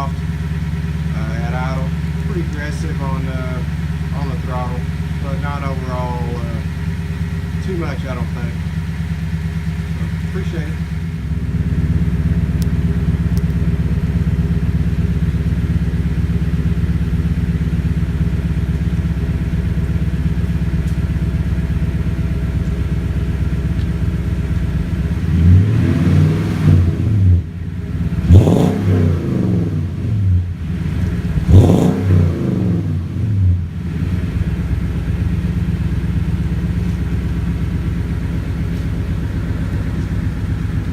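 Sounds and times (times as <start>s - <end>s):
engine revving: 0.0s - 40.9s
truck engine idling: 0.0s - 40.9s.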